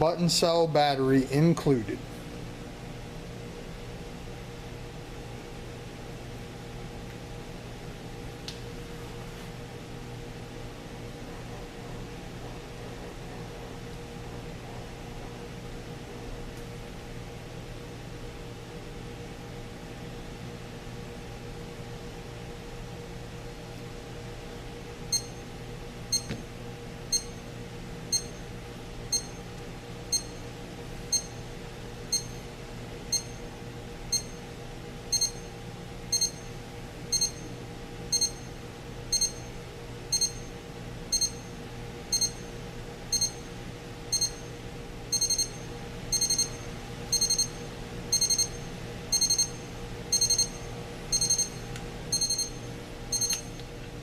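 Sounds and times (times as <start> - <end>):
steady low hum: 0.0 - 54.0
alarm clock beeping: 25.1 - 25.4, 27.1 - 27.4, 28.1 - 28.4, 29.1 - 29.4, 30.1 - 30.4, 31.1 - 31.4, 32.1 - 32.4, 33.1 - 33.4, 34.1 - 34.4, 35.1 - 35.5, 36.1 - 37.5, 38.1 - 38.5, 39.1 - 39.5, 40.1 - 40.5, 41.1 - 41.5, 42.1 - 42.5, 43.1 - 43.5, 44.1 - 44.5, 45.1 - 53.5.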